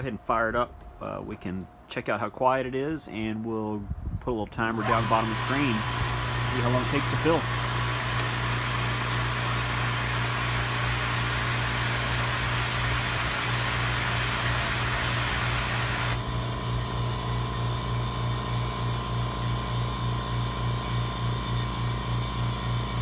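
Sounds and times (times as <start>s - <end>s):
rush of venting air: 4.0s - 16.5s
compressor pump motor hum: 4.6s - 23.0s.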